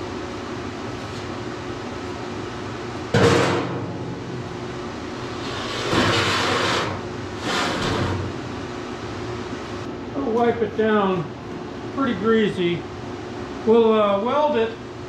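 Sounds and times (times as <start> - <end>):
fan whirring hum: 0.0 - 15.0
steel scraping or sliding: 5.4 - 8.0.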